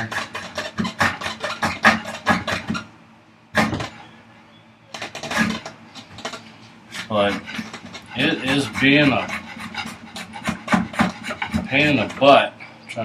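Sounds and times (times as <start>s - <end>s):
hand tool scraping hard wood: 0.0s - 2.9s, 3.6s - 4.0s, 5.0s - 12.5s.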